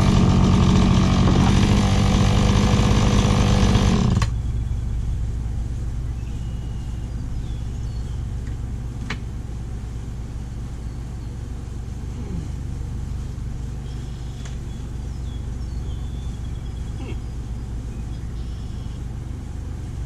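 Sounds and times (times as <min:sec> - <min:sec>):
chainsaw cutting log: 0:00.0 - 0:04.3.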